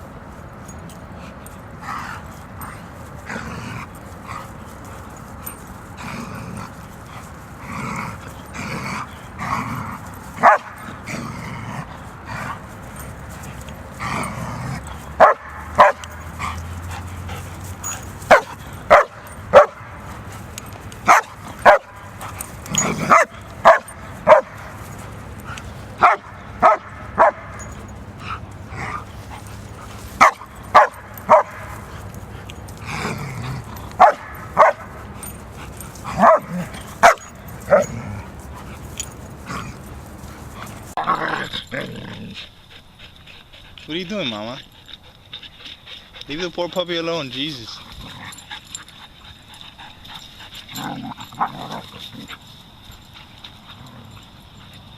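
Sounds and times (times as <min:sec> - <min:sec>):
dog barking: 0:10.4 - 0:10.8, 0:15.1 - 0:16.7, 0:18.3 - 0:20.0, 0:21.0 - 0:22.1, 0:22.8 - 0:24.7, 0:26.0 - 0:27.6, 0:30.2 - 0:31.8, 0:34.0 - 0:35.0, 0:36.2 - 0:37.9.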